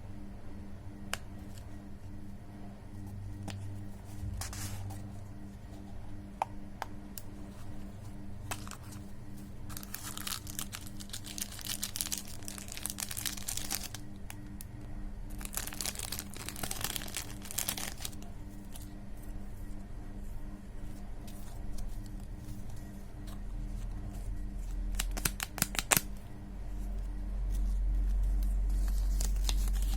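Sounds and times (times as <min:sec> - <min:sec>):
steady low hum: 0:00.0 - 0:29.9
plastic wrappers crinkling: 0:09.7 - 0:14.0, 0:15.3 - 0:18.8, 0:24.9 - 0:26.1, 0:28.2 - 0:29.9.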